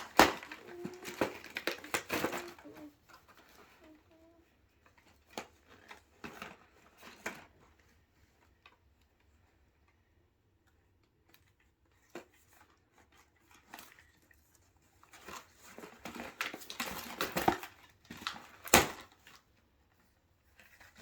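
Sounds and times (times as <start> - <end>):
plastic packaging snapping: 0.0 - 2.8
plastic packaging clicks: 0.0 - 2.9
packaging crinkling and rustling: 0.0 - 3.4.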